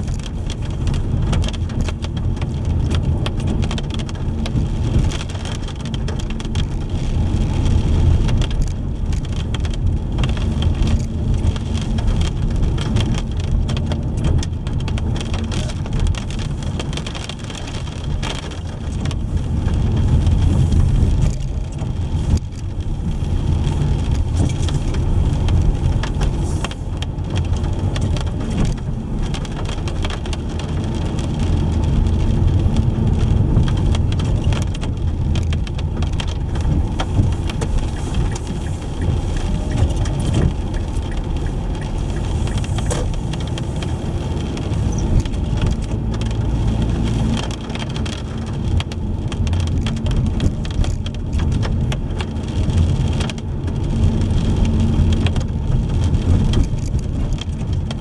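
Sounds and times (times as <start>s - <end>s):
car road and engine rumble: 0.0s - 58.0s
rain pattering on car: 0.0s - 58.0s.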